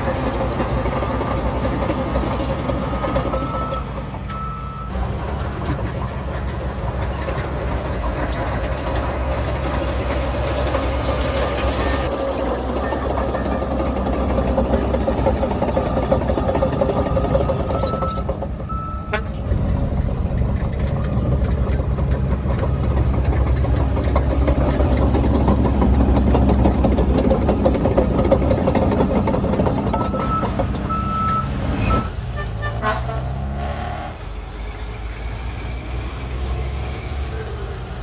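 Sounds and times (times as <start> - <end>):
bulldozer diesel engine running: 0.0 - 38.0
reverse alarm beeping: 17.7 - 19.2, 30.0 - 32.1.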